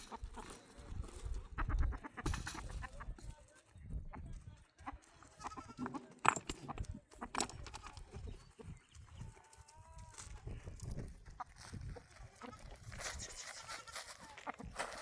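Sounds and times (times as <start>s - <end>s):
knocks and shuffling: 0.0s - 15.0s
livestock calls: 12.4s - 14.7s.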